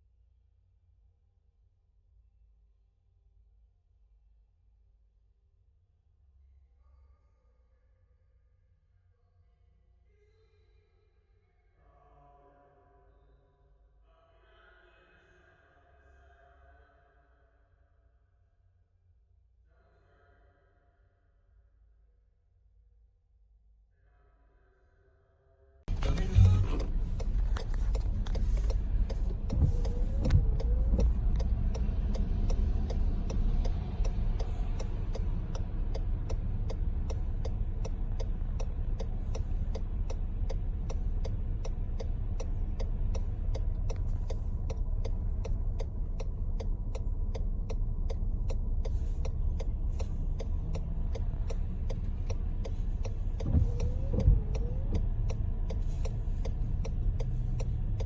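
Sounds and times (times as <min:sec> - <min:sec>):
car engine and road rumble: 0:25.9 - 0:58.0
indicator clicking: 0:34.0 - 0:58.0.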